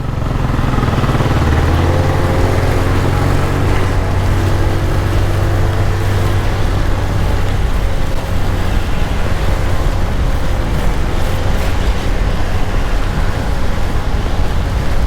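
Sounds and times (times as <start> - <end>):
scooter engine whine: 0.0 - 15.0
wind rush over microphone: 0.0 - 15.0.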